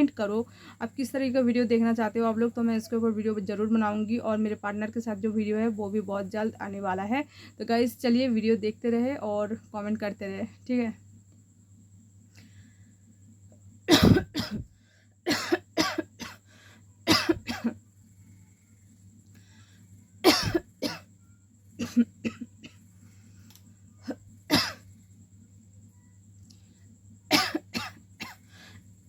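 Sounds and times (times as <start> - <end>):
woman coughing: 13.9 - 14.7, 15.3 - 16.4, 17.1 - 17.8, 20.2 - 21.1, 21.8 - 22.8, 24.0 - 24.8, 27.3 - 28.4.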